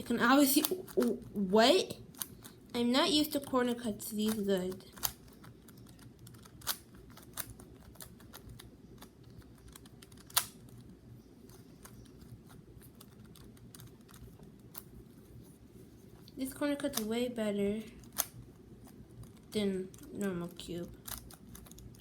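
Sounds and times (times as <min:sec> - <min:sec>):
speed cube plastic clicks: 0:00.4 - 0:01.3, 0:04.2 - 0:14.9, 0:18.0 - 0:22.0
loud cube snaps: 0:10.2 - 0:10.6.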